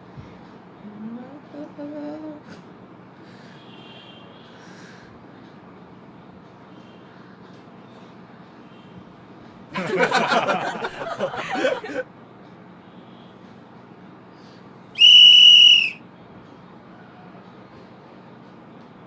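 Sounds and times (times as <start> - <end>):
woman giggling: 9.8 - 12.0
high-pitched whistle tone: 15.0 - 16.0.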